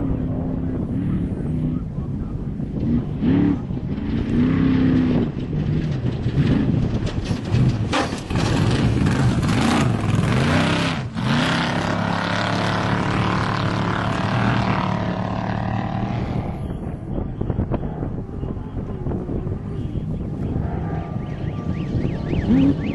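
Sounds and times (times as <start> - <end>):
off-road vehicle engine running hard: 0.0 - 22.9.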